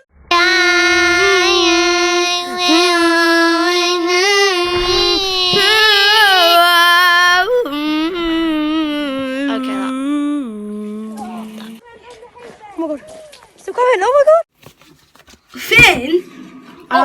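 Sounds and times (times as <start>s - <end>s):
voice-like long wavering note: 0.3s - 11.8s.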